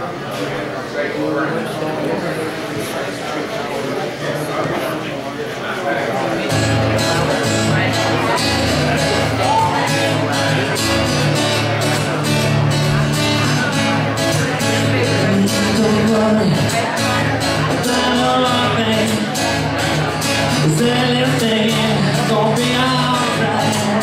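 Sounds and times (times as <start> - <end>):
reggae band playing: 6.5 - 24.0.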